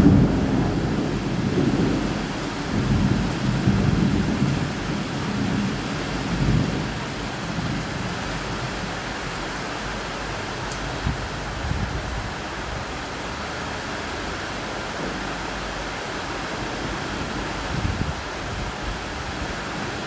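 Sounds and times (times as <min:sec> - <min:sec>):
rolling thunder: 0:00.0 - 0:09.1
steady rain: 0:00.0 - 0:20.0.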